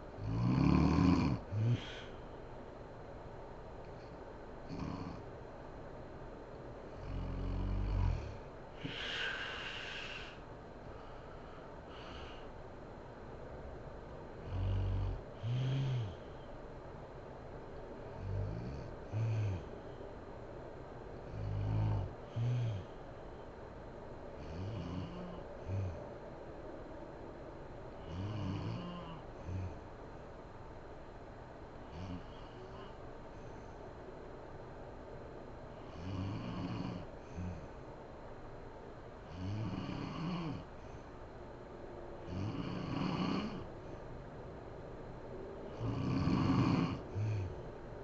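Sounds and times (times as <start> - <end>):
woman snoring: 0.2 - 2.1, 4.0 - 5.2, 7.0 - 10.4, 14.4 - 16.4, 18.2 - 19.7, 21.3 - 22.9, 24.4 - 26.0, 28.0 - 29.8, 31.9 - 33.0, 35.8 - 37.7, 39.3 - 40.7, 42.2 - 43.7, 45.7 - 47.6
snort: 0.2 - 2.2, 3.9 - 5.2, 6.9 - 10.4, 11.9 - 12.5, 14.4 - 16.4, 18.1 - 19.7, 21.2 - 23.0, 24.4 - 26.1, 28.0 - 29.9, 31.8 - 33.7, 35.8 - 37.8, 39.2 - 41.1, 42.2 - 44.0, 45.7 - 47.6.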